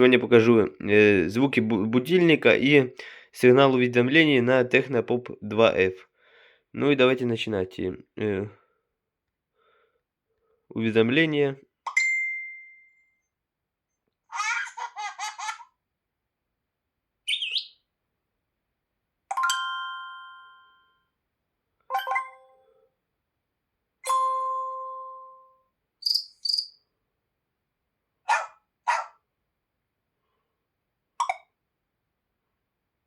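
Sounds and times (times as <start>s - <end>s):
smartphone upward chirp: 17.3s - 17.8s, 26.0s - 26.8s
bell-like chime ringing: 19.4s - 21.1s, 21.9s - 22.7s.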